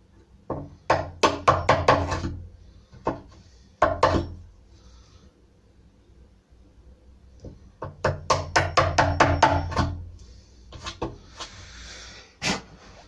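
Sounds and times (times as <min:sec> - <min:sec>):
chisel being struck: 0:07.8 - 0:10.0.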